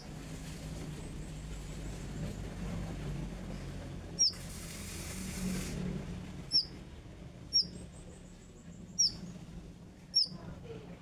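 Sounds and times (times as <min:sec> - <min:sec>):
songbird chirps: 0:09.0 - 0:09.2, 0:10.2 - 0:10.4.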